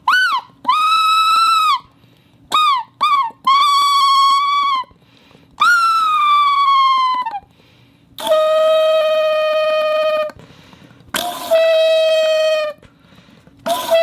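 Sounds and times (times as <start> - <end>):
buzzy reedy whistle tones: 0.0 - 1.9, 2.5 - 4.8, 8.2 - 10.4, 11.4 - 12.8.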